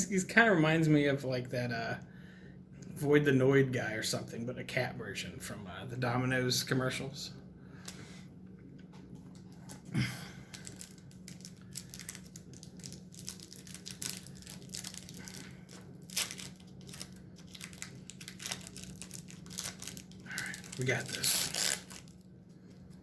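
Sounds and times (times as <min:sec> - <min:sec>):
wrapper crinkling and tearing: 0:09.3 - 0:22.9.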